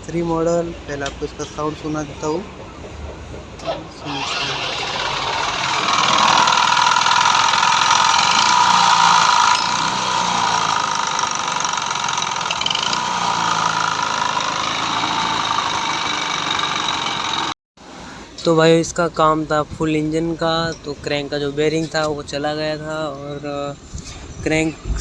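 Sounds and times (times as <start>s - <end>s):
scooter engine running: 4.0s - 17.6s.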